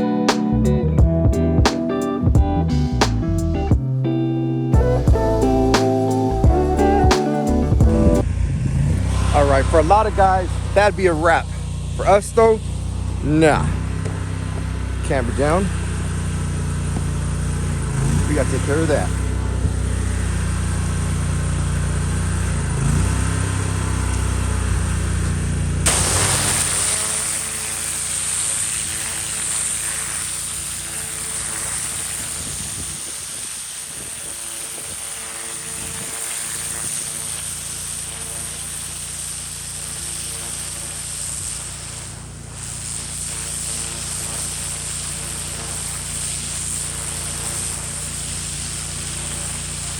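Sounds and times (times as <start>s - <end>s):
high-pressure water spraying: 4.8s - 8.2s, 13.8s - 49.9s
pressure washer engine running: 4.8s - 49.9s.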